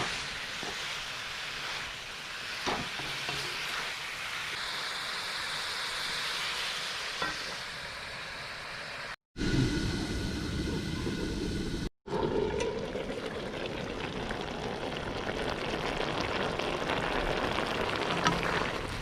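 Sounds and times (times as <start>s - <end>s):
food sizzling in hot oil: 0.0s - 9.2s, 13.0s - 19.0s.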